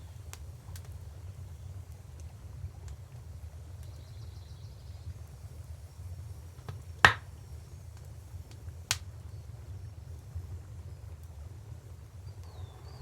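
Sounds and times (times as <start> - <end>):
wood fire crackling and popping: 0.1 - 4.0, 6.5 - 9.3.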